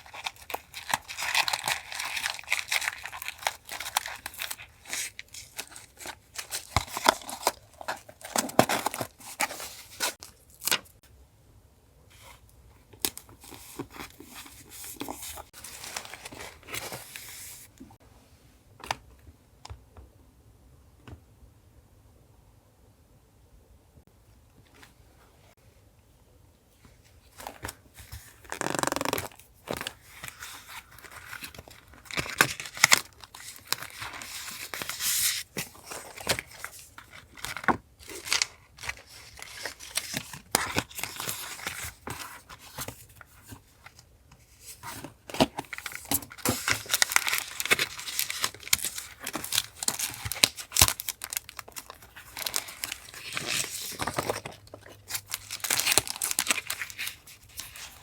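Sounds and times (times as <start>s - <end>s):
paper rustling and tearing: 44.6s - 58.0s.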